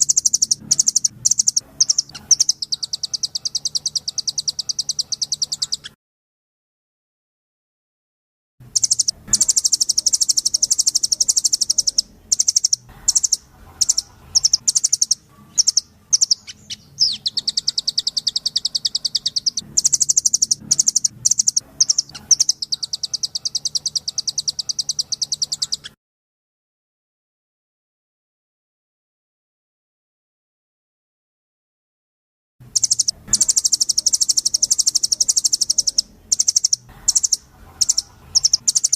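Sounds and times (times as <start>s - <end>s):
songbird high-pitched trills: 0.0s - 6.0s, 8.7s - 26.0s, 32.7s - 38.9s.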